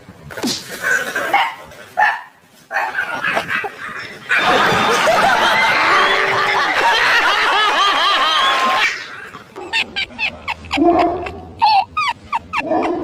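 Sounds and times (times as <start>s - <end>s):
many people laughing: 2.9s - 12.8s.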